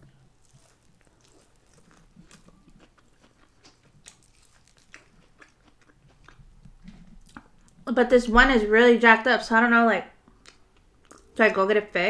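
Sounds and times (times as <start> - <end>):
chewing crisp food: 0.0 - 7.8, 10.2 - 11.4.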